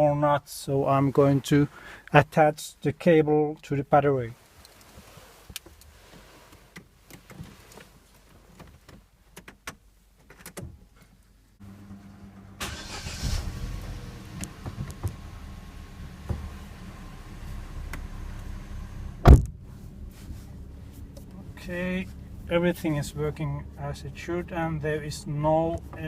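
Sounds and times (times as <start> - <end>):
car engine cranking and idling: 11.6 - 26.0
steady low hum: 13.4 - 25.5.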